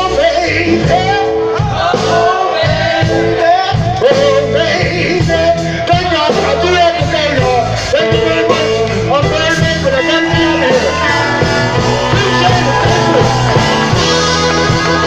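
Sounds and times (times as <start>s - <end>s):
live blues band: 0.0s - 15.0s
lead guitar bending notes: 7.8s - 15.0s.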